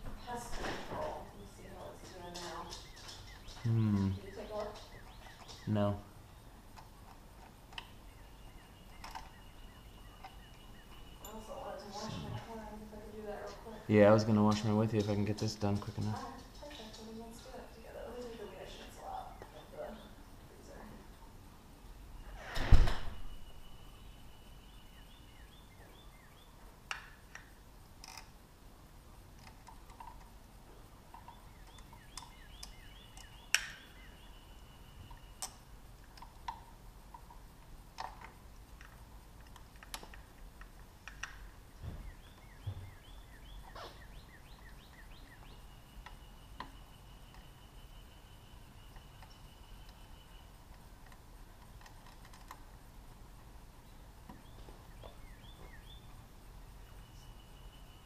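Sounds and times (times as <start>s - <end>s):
bird song with trill: 1.2s - 7.1s, 7.8s - 12.4s, 23.0s - 26.6s, 31.1s - 35.6s, 41.8s - 50.7s, 53.8s - 58.0s.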